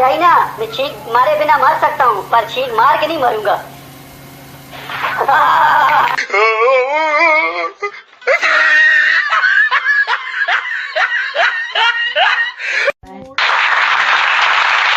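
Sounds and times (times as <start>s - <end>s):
rapid laughter: 4.8s - 6.3s, 7.8s - 12.9s.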